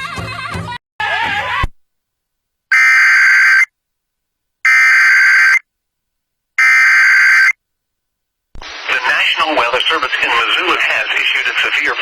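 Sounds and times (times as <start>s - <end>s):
buzzing digital data tones: 2.7s - 3.7s, 4.7s - 5.6s, 6.6s - 7.6s.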